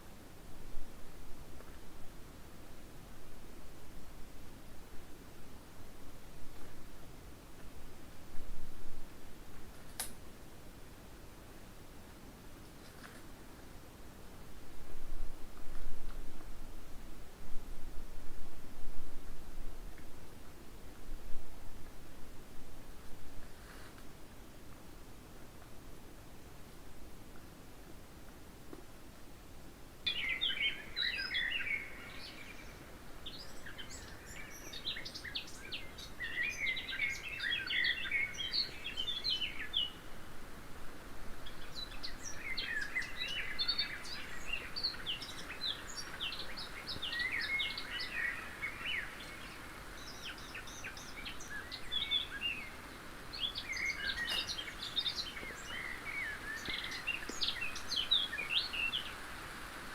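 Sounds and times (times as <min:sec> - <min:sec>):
songbirds chirping: 0:19.1 - 0:59.9.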